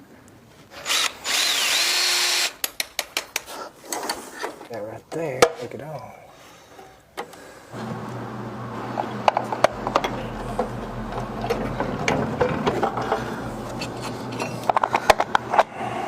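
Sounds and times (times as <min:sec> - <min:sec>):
steady low hum: 0:07.6 - 0:16.0.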